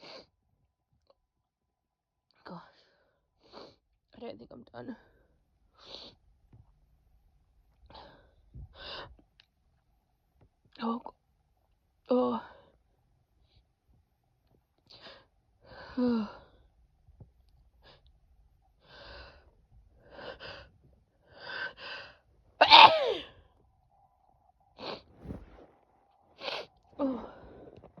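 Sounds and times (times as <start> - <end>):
woman sneezing: 22.6 - 23.3.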